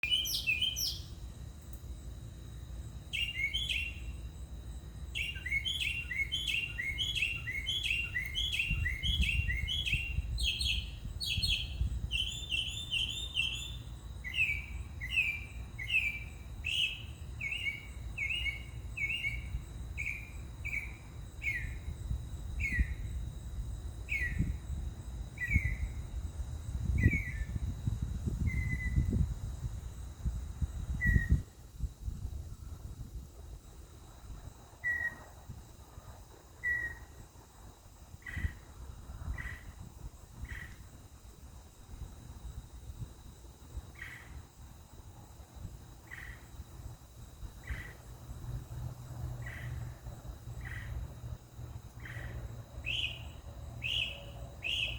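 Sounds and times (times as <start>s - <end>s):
mockingbird singing: 0.0s - 1.1s, 3.2s - 4.1s, 5.2s - 19.4s, 52.0s - 54.9s.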